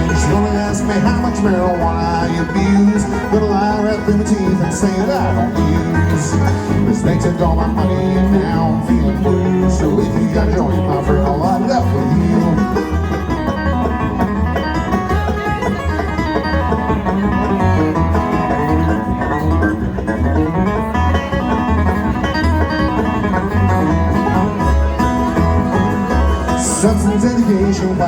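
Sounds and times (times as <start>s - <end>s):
bluegrass band playing: 0.0s - 28.0s.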